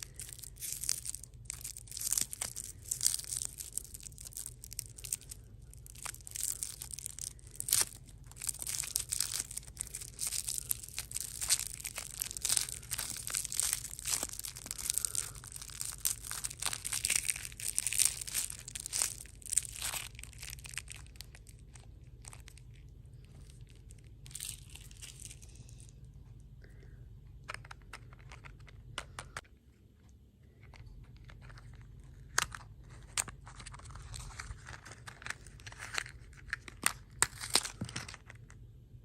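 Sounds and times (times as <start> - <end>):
sweets being chewed crunchily: 0.0 - 29.4
steady low hum: 0.0 - 39.0.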